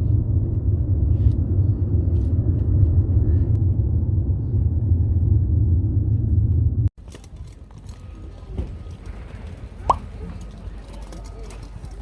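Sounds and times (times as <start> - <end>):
car interior road and engine drone: 0.0 - 6.9.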